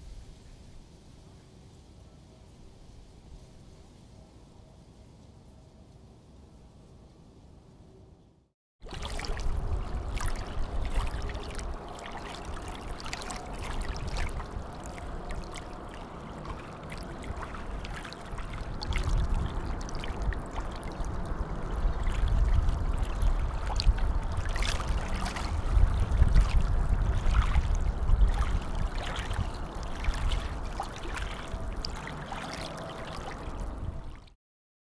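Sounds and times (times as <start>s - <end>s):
water trickling and lapping: 8.8s - 34.4s
deep rumble: 12.7s - 32.0s.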